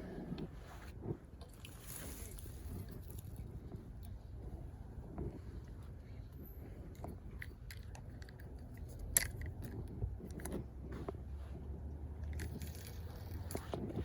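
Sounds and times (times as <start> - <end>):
steady low rumble: 0.0 - 14.0
handling clicks and crunches: 5.1 - 11.2, 11.8 - 14.0.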